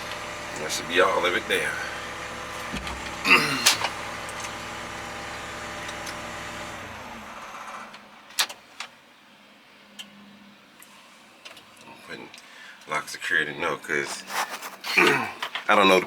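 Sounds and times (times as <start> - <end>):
diesel engine running and shutting down: 0.0 - 8.2.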